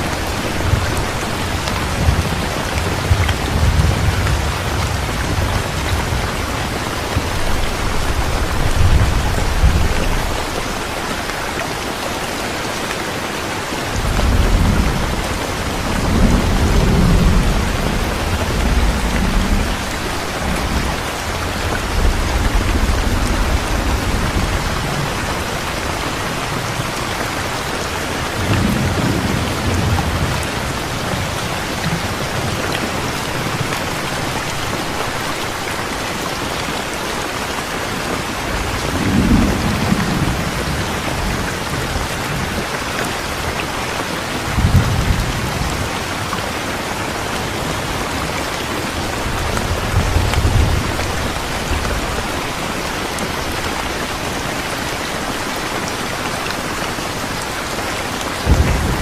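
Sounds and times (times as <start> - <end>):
heavy rain falling: 0.0 - 59.0
low rumbles of thunder: 0.5 - 11.0, 13.9 - 27.0, 58.4 - 59.0.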